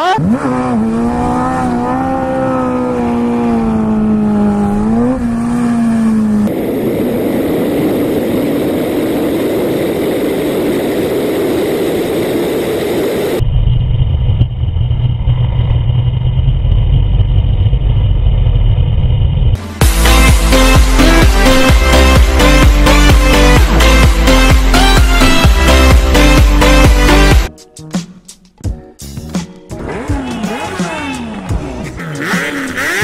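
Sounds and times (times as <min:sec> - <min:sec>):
motorcycle engine droning: 0:00.0 - 0:20.4, 0:29.8 - 0:33.0
deep rumble of wind and engine: 0:00.2 - 0:19.6.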